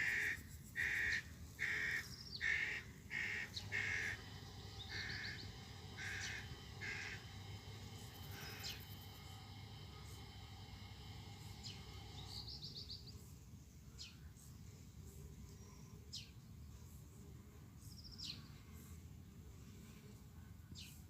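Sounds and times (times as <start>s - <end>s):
steady pitched hum: 0.0s - 16.0s
birds chirping and trilling: 0.1s - 13.3s
faint low rumble: 3.5s - 13.8s.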